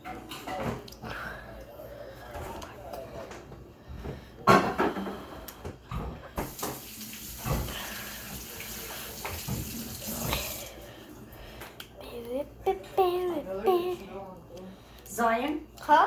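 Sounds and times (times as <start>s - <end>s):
tap water running into sink: 6.4s - 10.7s.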